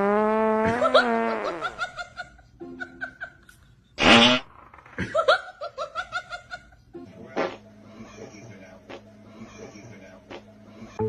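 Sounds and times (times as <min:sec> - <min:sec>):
prank fart sounds: 0:00.0 - 0:01.8, 0:04.0 - 0:05.0, 0:07.4 - 0:07.6.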